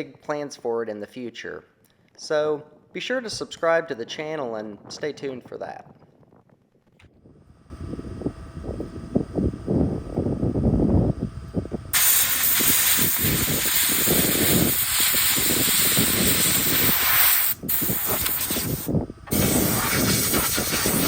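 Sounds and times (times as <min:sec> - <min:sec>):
pressure cleaning gun hissing: 0:12.0 - 0:21.0.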